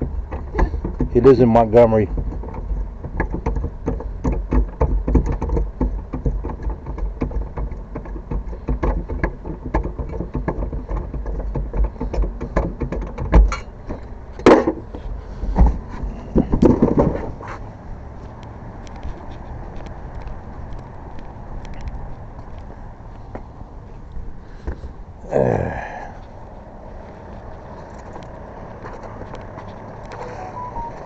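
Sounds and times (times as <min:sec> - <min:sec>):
clicks and knocks: 0:00.0 - 0:01.2, 0:02.1 - 0:15.0, 0:15.6 - 0:17.4
loud bumps: 0:00.0 - 0:17.6.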